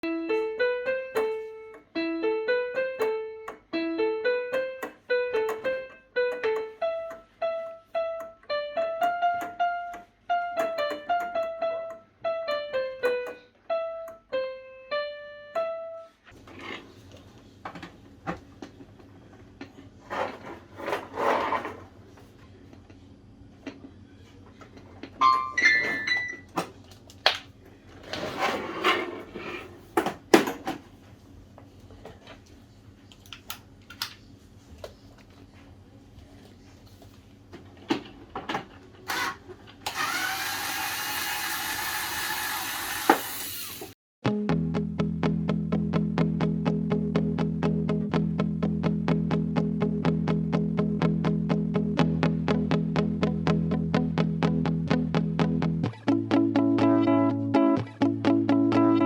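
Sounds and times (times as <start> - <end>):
piano-like keyboard melody: 0.0 - 16.4, 25.2 - 26.6, 44.2 - 59.0.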